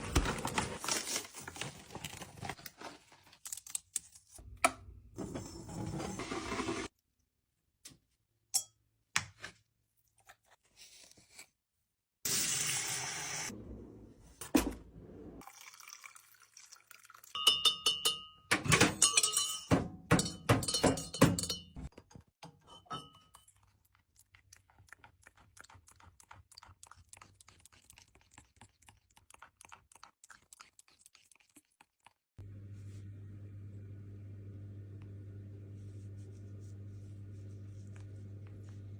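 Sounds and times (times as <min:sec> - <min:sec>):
parrot lapping water: 0:15.4 - 0:17.3, 0:23.4 - 0:32.3.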